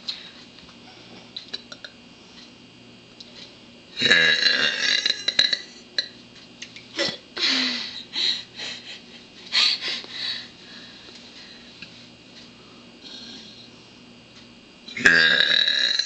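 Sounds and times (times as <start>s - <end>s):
woman burping: 4.0s - 5.7s, 15.0s - 16.0s.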